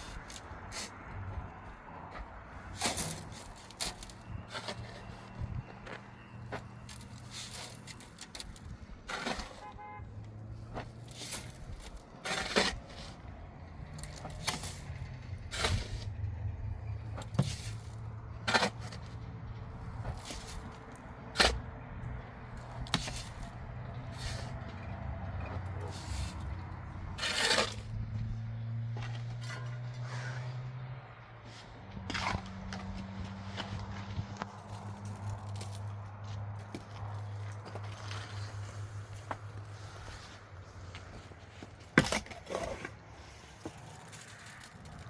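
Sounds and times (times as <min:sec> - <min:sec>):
masonry scrapes and knocks: 0:02.7 - 0:05.5, 0:06.4 - 0:09.7, 0:10.8 - 0:16.2, 0:17.1 - 0:19.2, 0:19.8 - 0:21.7, 0:22.5 - 0:28.0, 0:31.5 - 0:35.9, 0:36.6 - 0:45.0.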